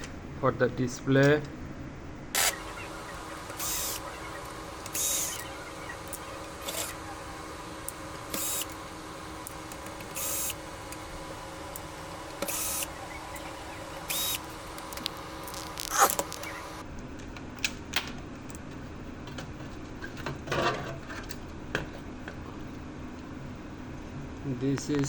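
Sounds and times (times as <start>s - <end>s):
machinery hum: 0.0s - 17.0s.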